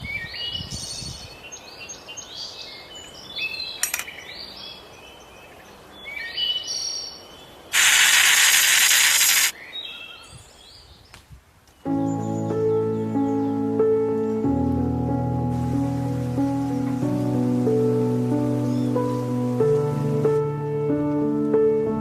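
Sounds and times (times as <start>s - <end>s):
songbirds singing: 0.0s - 8.0s, 9.4s - 15.0s, 16.6s - 19.8s
sharp click: 3.8s - 4.2s, 7.8s - 9.5s
loud even hiss: 7.7s - 9.6s, 15.4s - 19.8s.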